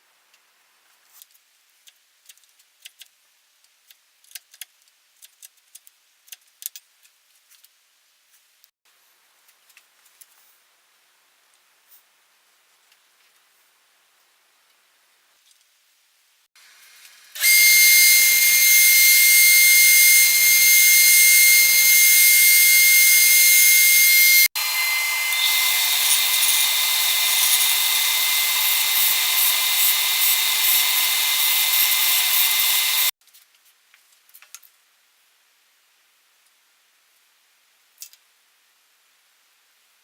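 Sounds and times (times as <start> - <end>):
drill press drilling wood: 17.4 - 33.1.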